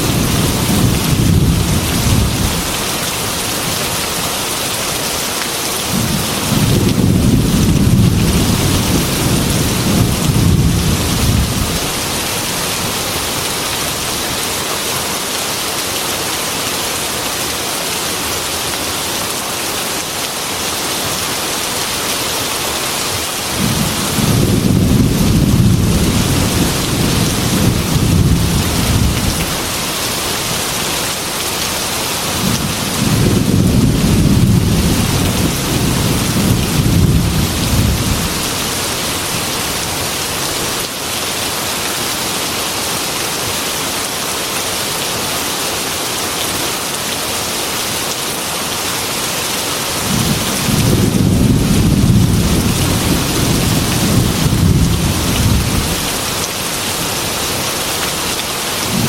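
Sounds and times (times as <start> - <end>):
thunder rumbling: 0.0 - 2.9, 5.9 - 12.9, 23.6 - 29.8, 32.3 - 39.8, 50.0 - 56.3
heavy rain on glass window: 0.0 - 41.6, 46.3 - 59.0.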